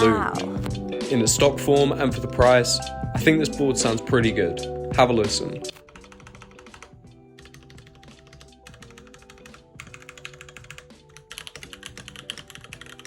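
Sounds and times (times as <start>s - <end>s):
soft background music: 0.0s - 13.0s
mechanical keyboard typing: 5.7s - 13.0s.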